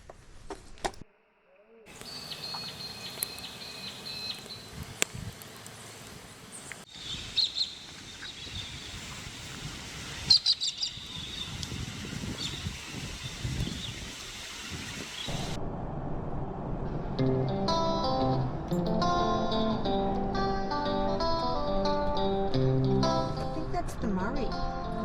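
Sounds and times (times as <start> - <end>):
outdoor background noise: 0.0 - 25.0
birds calling and chirping: 1.9 - 15.6.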